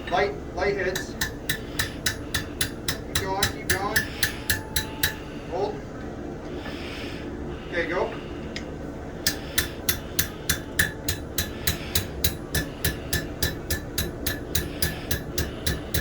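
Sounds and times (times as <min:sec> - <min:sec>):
hammer striking steel on anvil: 0:00.9 - 0:05.3, 0:09.2 - 0:16.0.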